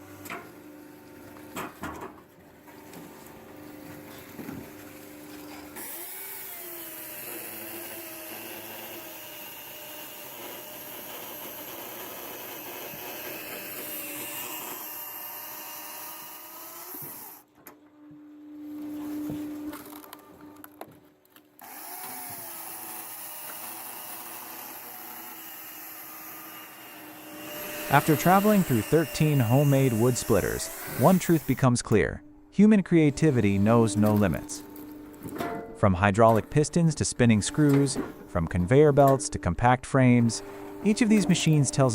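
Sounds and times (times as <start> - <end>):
motor-driven saw running: 2.9 - 17.4, 21.6 - 32.0, 32.9 - 35.4, 36.1 - 41.9
saw cutting through log: 5.5 - 17.4, 21.6 - 31.9, 32.9 - 34.9, 36.0 - 41.9.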